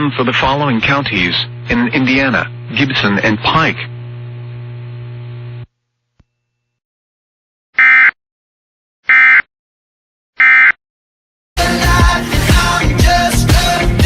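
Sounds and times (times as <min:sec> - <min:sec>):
music: 0:11.6 - 0:14.0.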